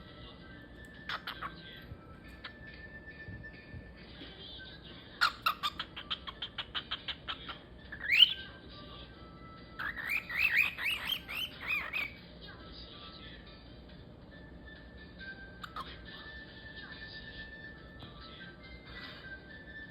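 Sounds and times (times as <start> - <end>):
cockatiel chirping and whistling: 0.9 - 1.6, 5.2 - 8.5, 9.7 - 12.2, 15.2 - 16.5.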